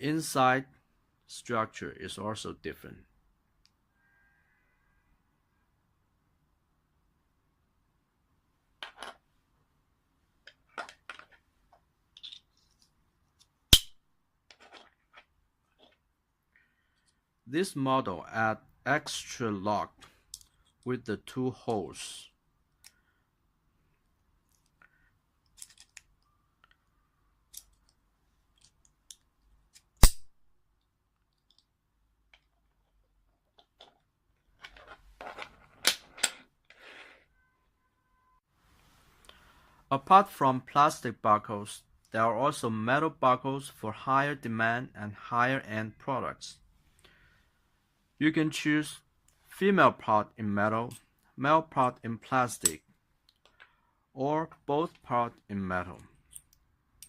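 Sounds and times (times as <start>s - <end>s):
buckle snapping: 13.7s - 14.0s
sharp buckle click: 13.7s - 14.0s, 29.7s - 30.3s.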